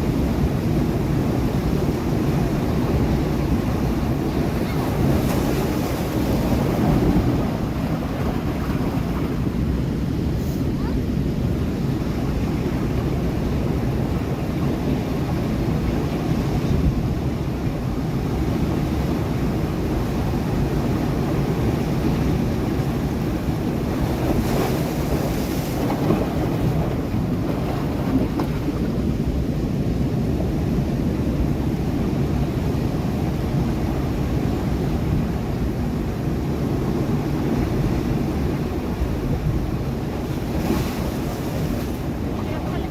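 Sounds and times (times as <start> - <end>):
surf roaring: 0.0 - 42.9
wave splashing on rocks: 22.1 - 28.9, 38.9 - 42.9.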